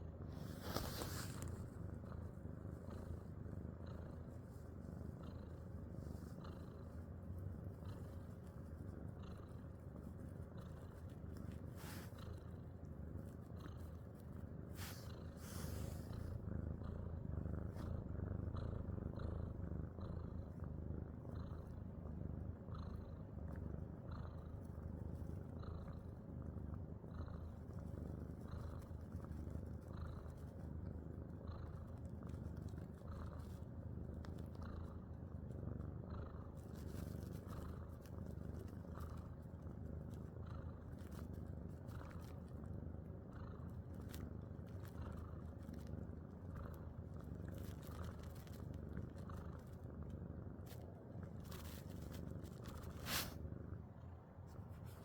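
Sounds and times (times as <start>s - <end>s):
pet snoring: 14.7s - 20.5s, 51.4s - 53.4s.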